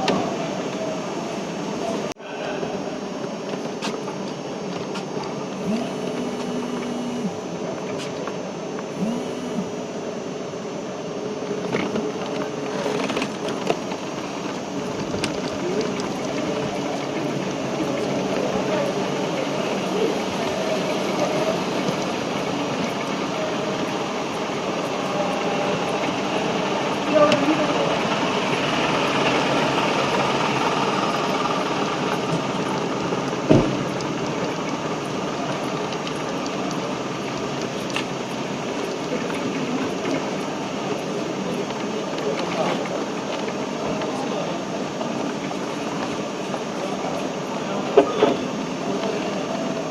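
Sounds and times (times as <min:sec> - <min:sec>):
vehicle engines running: 0:11.3 - 0:49.9.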